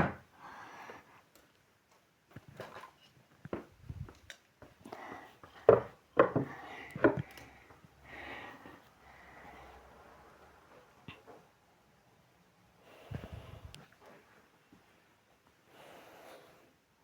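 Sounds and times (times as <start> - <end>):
objects knocking on a table: 5.7 - 7.2
rustling and sliding objects: 13.0 - 16.8.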